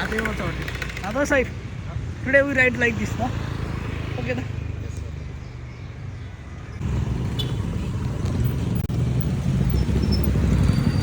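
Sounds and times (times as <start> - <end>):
motorcycle engine rumbling: 5.1 - 11.0.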